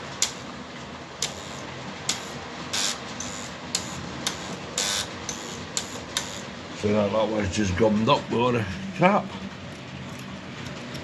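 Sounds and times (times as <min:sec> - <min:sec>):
point motor buzz: 0:01.2 - 0:06.5.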